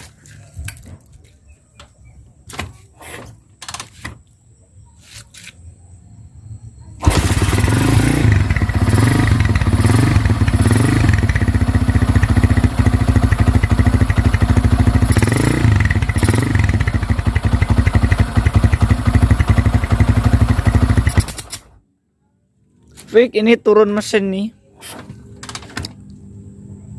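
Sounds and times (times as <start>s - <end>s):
motorcycle engine revving: 7.0s - 21.8s.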